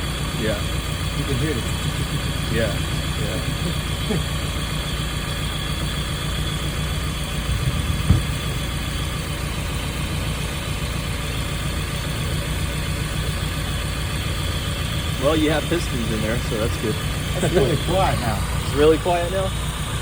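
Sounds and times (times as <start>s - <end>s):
truck engine idling: 0.0s - 20.0s
brief thump: 8.0s - 8.4s.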